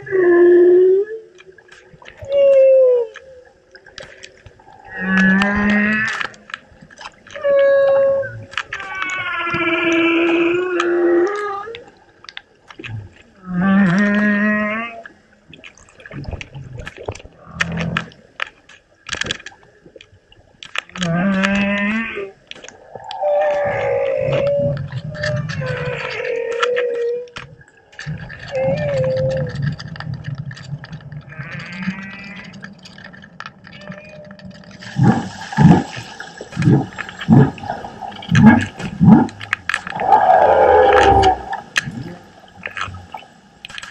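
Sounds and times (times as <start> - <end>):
humpback whale calls underwater: 0.0 - 6.6, 7.3 - 11.8, 21.0 - 29.9, 31.2 - 43.2
water clicks and crackles: 0.0 - 43.9
loud low underwater pulses: 34.8 - 43.2.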